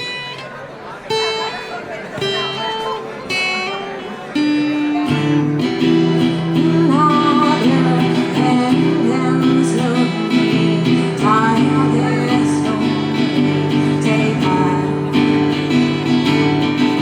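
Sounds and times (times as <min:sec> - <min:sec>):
acoustic guitar strumming chords: 0:00.0 - 0:17.0
person singing: 0:06.0 - 0:17.0.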